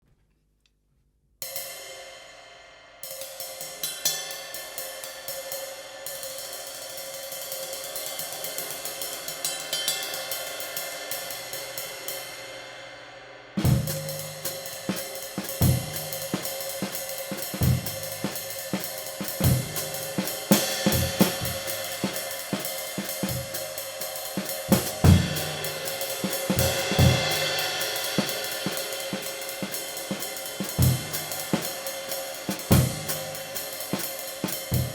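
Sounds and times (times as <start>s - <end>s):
bass drum: 13.6s - 31.8s, 32.5s - 34.0s, 34.6s - 34.9s
snare drum: 13.6s - 34.9s.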